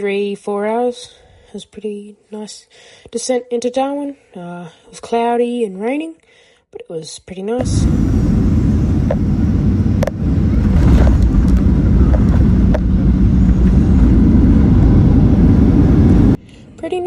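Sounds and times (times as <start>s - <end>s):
jet cabin rumble on landing: 7.6s - 16.4s.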